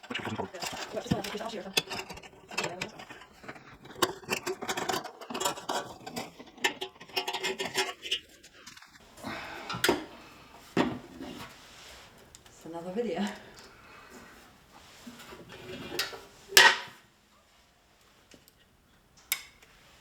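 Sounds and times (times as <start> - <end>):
metallic clicks and clatter: 0.0 - 9.0.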